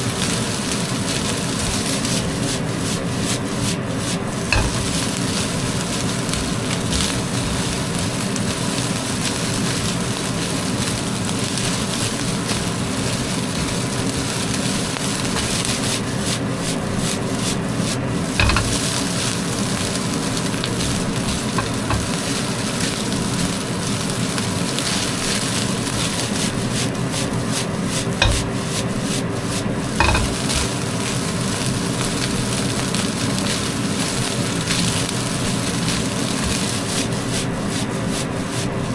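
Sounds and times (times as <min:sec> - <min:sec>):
rice sizzling in pan: 0:00.0 - 0:38.9
stirring and scraping: 0:01.5 - 0:10.0, 0:11.5 - 0:31.3, 0:32.2 - 0:38.9
utensil knocking against pan: 0:04.6 - 0:05.0, 0:18.4 - 0:18.9, 0:21.6 - 0:22.2, 0:28.2 - 0:28.6, 0:30.0 - 0:30.8.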